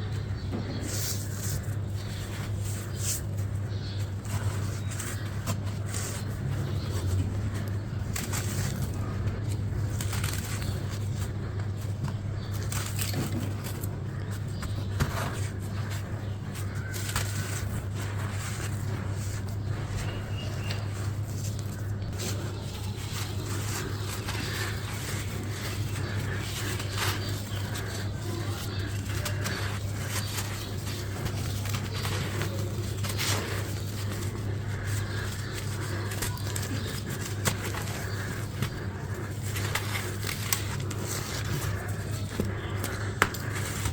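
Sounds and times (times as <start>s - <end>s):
steady low hum: 0.0s - 43.9s
crunchy material crumbling: 0.9s - 43.9s.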